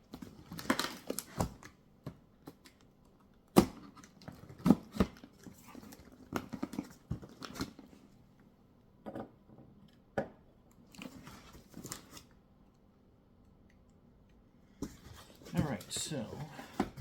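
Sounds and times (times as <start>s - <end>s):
cardboard packaging rustling: 14.8s - 17.0s.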